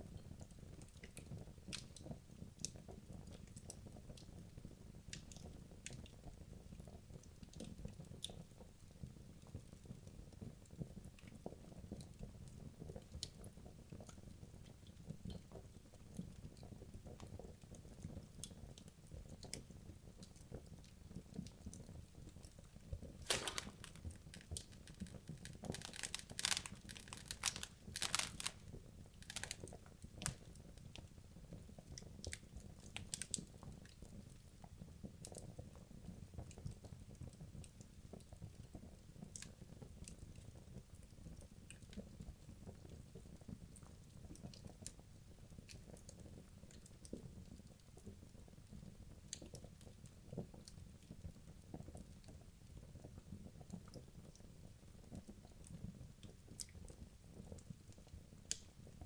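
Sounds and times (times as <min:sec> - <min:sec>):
fire crackles and pops: 0:23.2 - 0:31.1.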